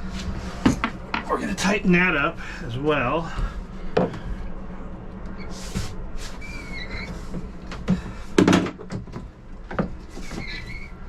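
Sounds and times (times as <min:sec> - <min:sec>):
steady low hum: 0:00.0 - 0:11.0
short squeaks: 0:06.4 - 0:07.3, 0:10.1 - 0:11.0.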